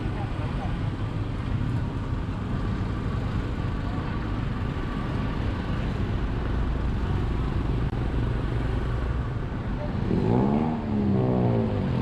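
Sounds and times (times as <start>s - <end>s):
traffic engines rumbling: 0.0s - 12.0s.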